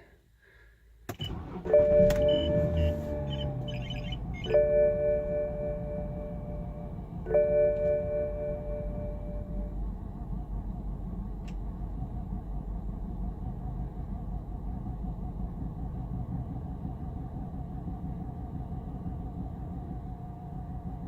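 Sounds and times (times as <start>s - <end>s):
car engine idling roughly: 1.3s - 7.2s.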